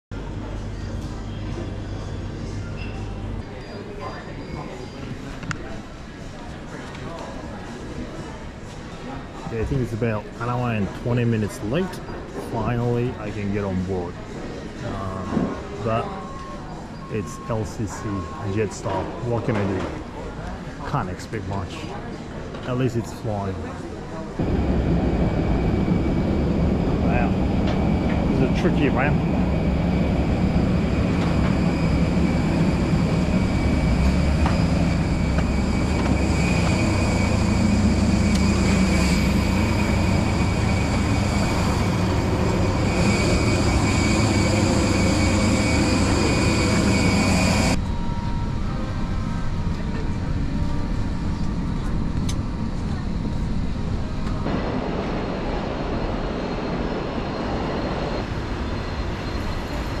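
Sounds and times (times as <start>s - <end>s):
high jet engine whine: 0.1s - 60.0s
jet engine rumble: 23.6s - 60.0s.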